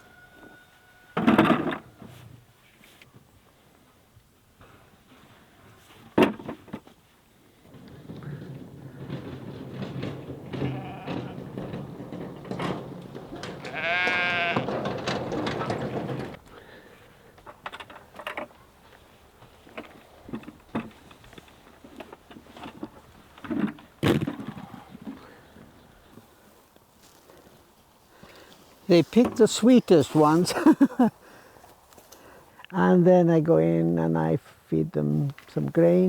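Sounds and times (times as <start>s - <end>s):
sheep bleating: 10.6s - 11.4s, 13.6s - 14.8s
flock rustling and shuffling: 26.1s - 32.7s.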